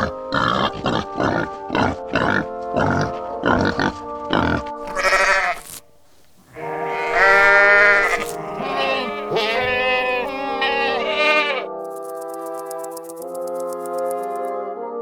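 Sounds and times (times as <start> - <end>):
background music: 0.0 - 15.0
wavering animal calls: 4.8 - 5.8, 6.4 - 11.7.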